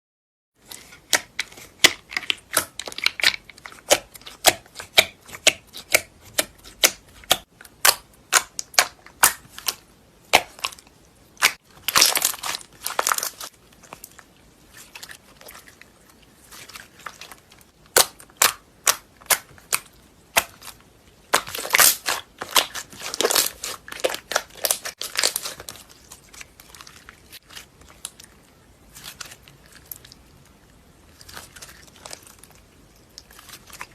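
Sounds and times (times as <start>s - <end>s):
slime crackling and crinkling: 0.7s - 33.9s.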